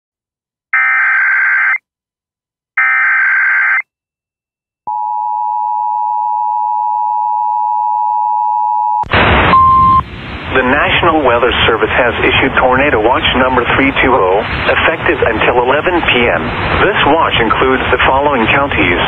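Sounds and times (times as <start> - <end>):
loud static burst: 9.1 - 19.0.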